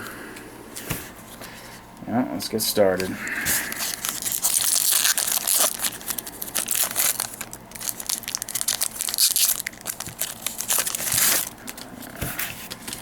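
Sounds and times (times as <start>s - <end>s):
foil wrapper tearing and crinkling: 3.6s - 13.0s.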